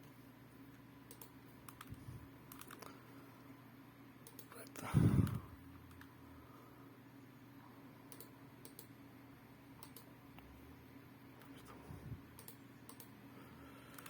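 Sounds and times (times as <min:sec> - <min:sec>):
faint computer clicks: 0:01.1 - 0:03.0, 0:04.2 - 0:06.1, 0:08.1 - 0:09.0, 0:09.8 - 0:10.5, 0:12.3 - 0:13.2.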